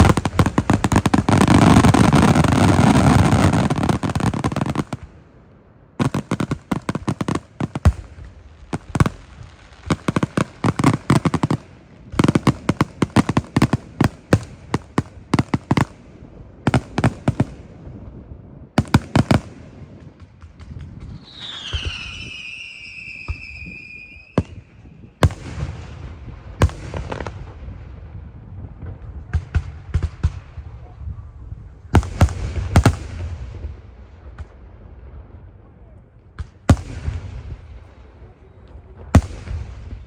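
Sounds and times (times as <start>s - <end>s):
whistling firework: 0.0s - 5.0s, 20.6s - 27.6s
fireworks crackling bangs: 0.0s - 5.3s, 6.0s - 31.1s, 31.8s - 40.0s.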